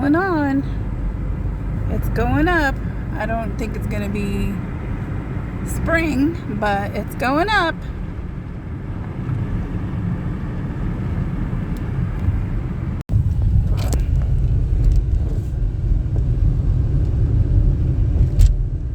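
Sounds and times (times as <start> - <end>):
car engine and tyre noise: 0.0 - 18.9.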